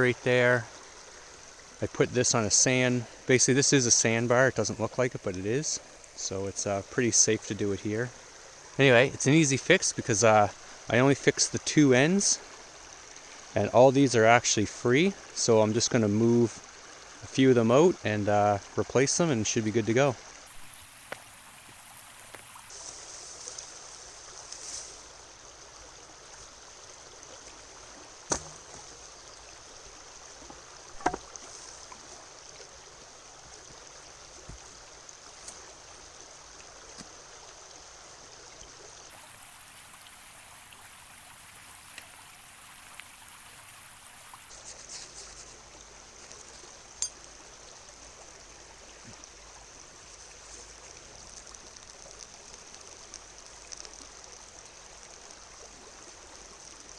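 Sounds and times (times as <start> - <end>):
river water flowing: 0.0 - 56.9
sharp knocks: 28.3 - 28.8, 31.0 - 31.3.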